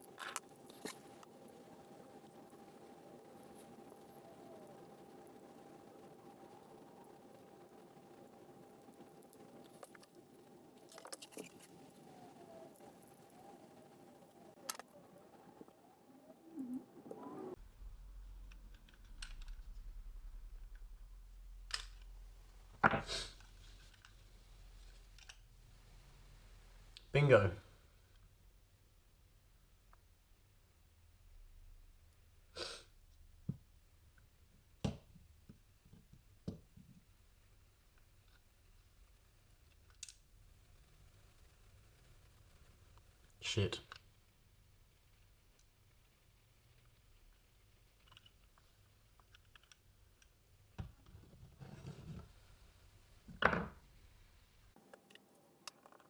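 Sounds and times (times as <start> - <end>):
faint steady hum: 0.0 - 56.0
short breathy hiss: 32.5 - 32.9
small plastic clicks and rattles: 47.8 - 50.4.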